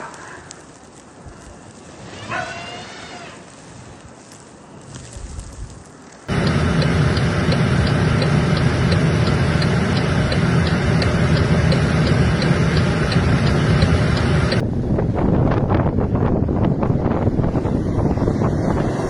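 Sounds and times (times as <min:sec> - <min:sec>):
engine and road noise: 0:00.0 - 0:19.0
fast even ticking: 0:06.3 - 0:14.6.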